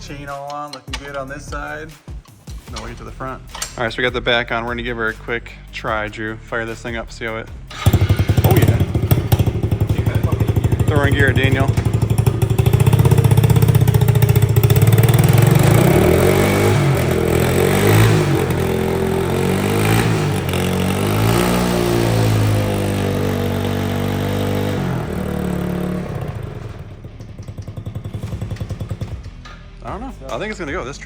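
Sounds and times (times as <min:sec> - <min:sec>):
small engine revving: 0:07.7 - 0:29.4.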